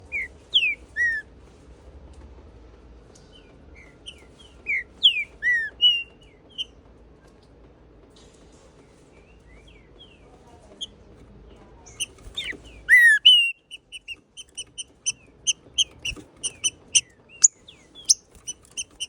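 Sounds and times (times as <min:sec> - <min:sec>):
bird whistling song: 0:00.0 - 0:01.3, 0:03.3 - 0:06.8, 0:11.9 - 0:19.0.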